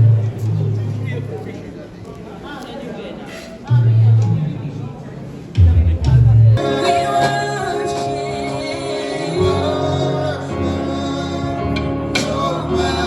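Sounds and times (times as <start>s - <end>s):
gospel music with singing: 5.6s - 13.0s.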